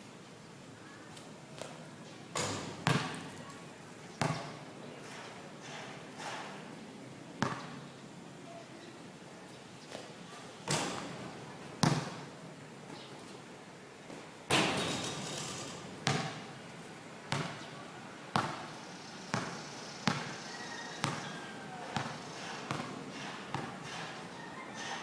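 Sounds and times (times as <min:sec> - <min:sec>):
basketball bouncing on a court: 0:02.4 - 0:03.4, 0:04.2 - 0:04.6, 0:07.4 - 0:07.7, 0:11.8 - 0:12.2, 0:16.0 - 0:16.5, 0:17.3 - 0:17.6, 0:18.3 - 0:18.6, 0:19.3 - 0:20.4, 0:21.0 - 0:21.4, 0:22.0 - 0:24.1.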